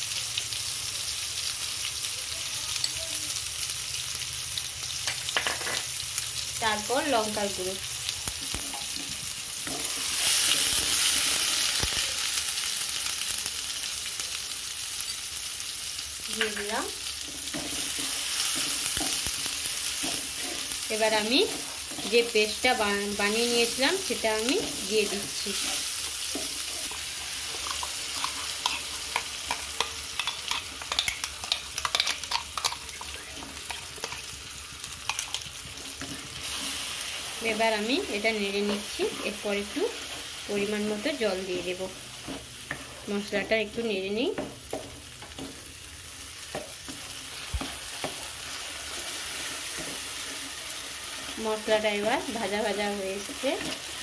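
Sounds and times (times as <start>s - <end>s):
spices sizzling in hot oil: 0.0s - 54.0s
spatula scraping a pan: 16.4s - 22.6s, 24.4s - 34.3s.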